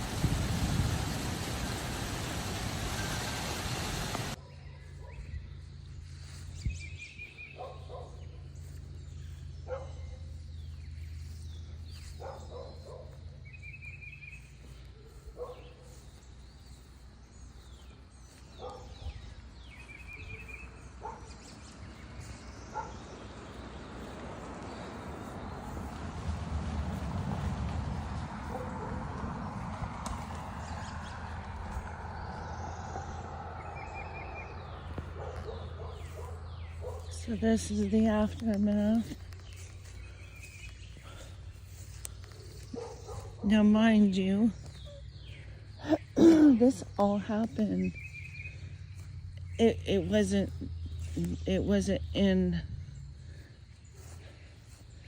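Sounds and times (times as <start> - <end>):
loud rush of noise: 0.0 - 4.4
birds calling: 0.0 - 55.0.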